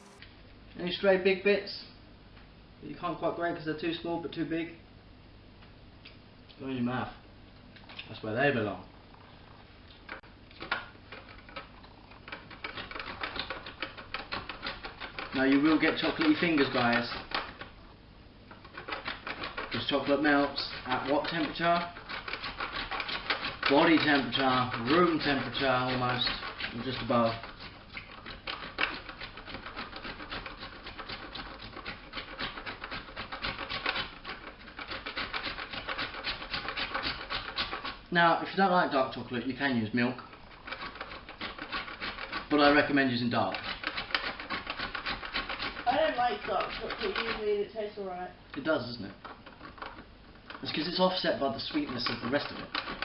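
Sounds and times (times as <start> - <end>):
chocolate grated on grater: 10.1 - 17.8, 18.6 - 38.0, 39.3 - 47.7, 48.6 - 53.0.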